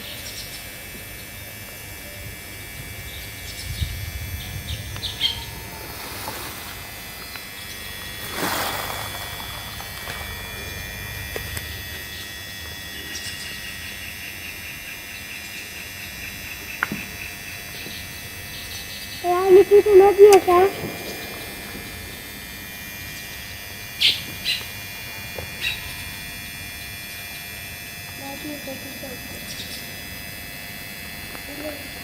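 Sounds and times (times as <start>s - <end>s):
high background hum: 0.0s - 32.0s
birds chirping and chattering: 2.8s - 12.4s, 13.0s - 24.8s, 25.4s - 26.2s, 29.3s - 30.0s
brief rushing swell: 3.8s - 11.3s, 20.5s - 24.2s.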